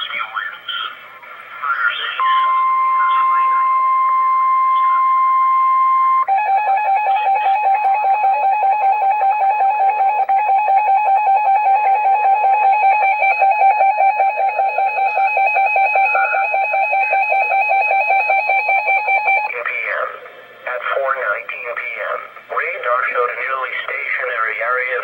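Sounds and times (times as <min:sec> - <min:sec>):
steady single-pitch beep: 0:02.2 - 0:19.5.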